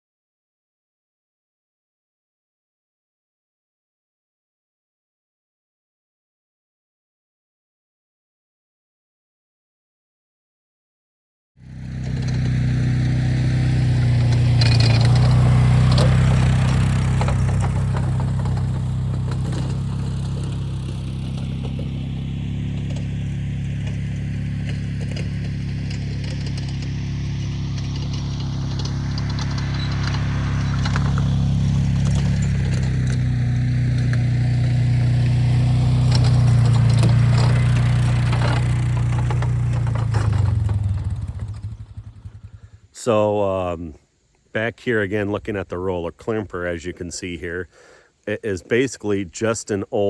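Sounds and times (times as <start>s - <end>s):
vehicle engine running: 11.6s - 43.8s
rattling and clatter: 12.0s - 42.7s.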